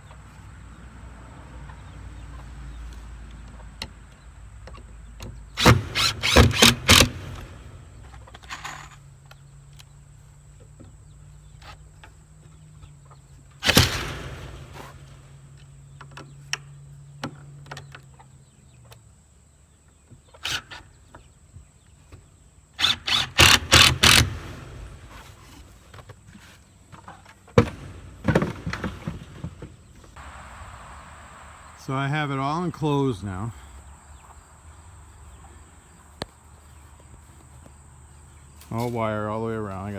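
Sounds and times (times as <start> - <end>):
faint low hum: 30.2 - 39.9.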